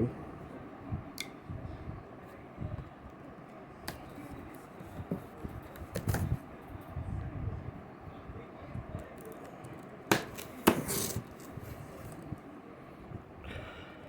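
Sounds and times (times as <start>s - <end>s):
cardboard rustling: 3.9s - 6.4s, 10.1s - 12.3s.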